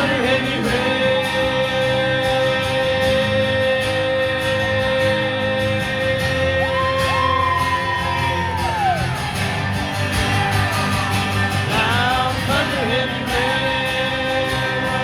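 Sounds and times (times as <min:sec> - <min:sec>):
country band playing: 0:00.0 - 0:15.0.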